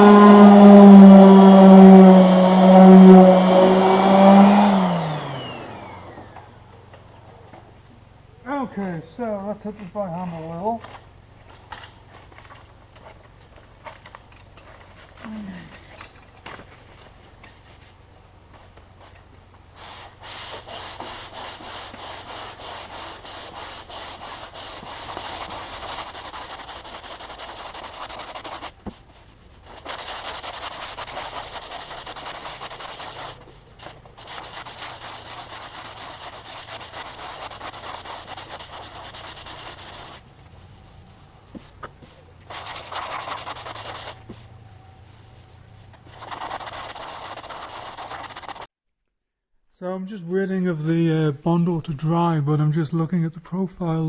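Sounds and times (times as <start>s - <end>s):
sandpaper rasping by hand: 0.0s - 5.7s, 18.6s - 40.2s, 42.4s - 44.4s, 45.3s - 48.7s.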